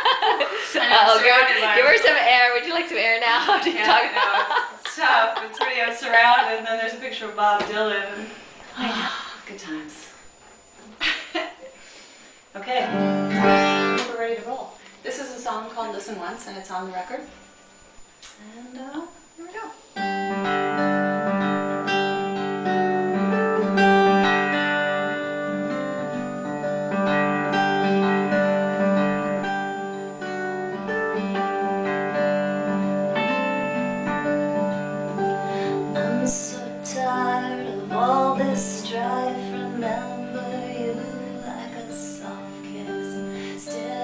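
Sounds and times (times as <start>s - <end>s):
acoustic guitar chords: 0.0s - 9.2s, 12.7s - 14.8s, 19.1s - 44.0s
gliding guitar notes: 0.7s - 4.3s, 12.8s - 14.6s, 19.9s - 44.0s.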